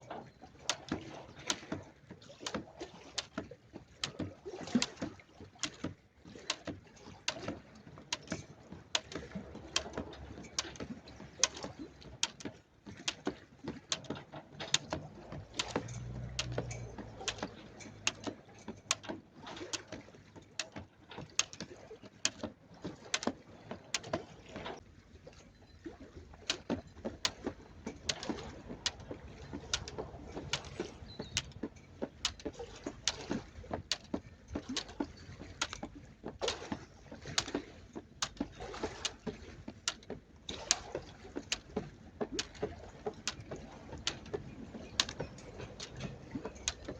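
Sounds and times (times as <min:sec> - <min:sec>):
faint water sound: 0:00.0 - 0:46.9
jump rope slapping ground: 0:00.6 - 0:01.8, 0:02.4 - 0:24.8, 0:26.5 - 0:46.9.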